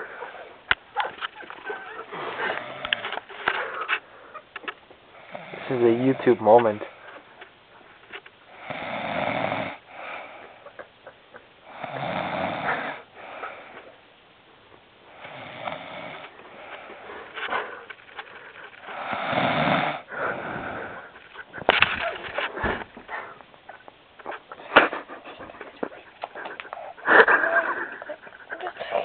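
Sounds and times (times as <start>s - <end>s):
man snoring: 5.2s - 5.8s, 8.6s - 10.4s, 11.7s - 13.5s, 15.1s - 16.2s, 18.9s - 21.0s.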